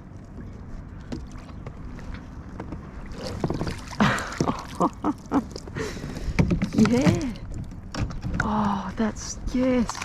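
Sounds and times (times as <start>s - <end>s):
water sloshing against kayak: 0.0s - 8.4s
water splash: 3.1s - 5.0s.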